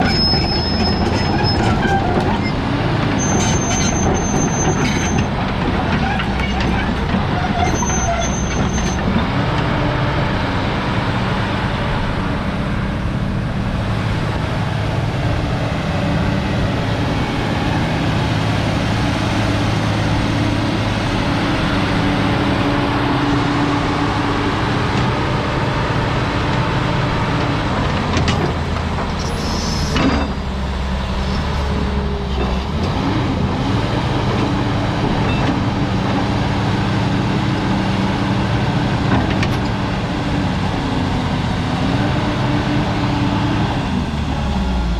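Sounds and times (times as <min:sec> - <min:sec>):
excavator diesel engine running: 0:00.0 - 0:44.9.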